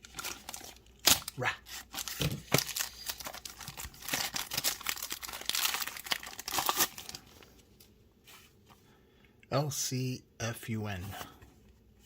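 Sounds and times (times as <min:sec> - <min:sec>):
packaging crinkling and tearing: 0:00.0 - 0:07.5.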